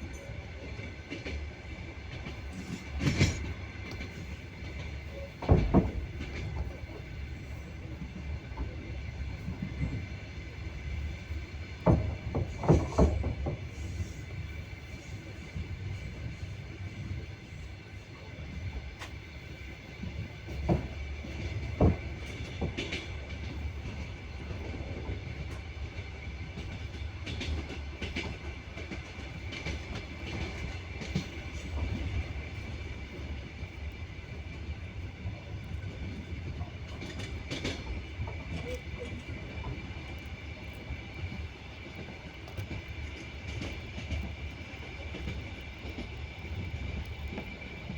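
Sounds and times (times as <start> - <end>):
train wheels rumbling on rails: 0.0 - 47.9
wheels clacking over rail joints: 2.1 - 7.0, 11.7 - 13.9.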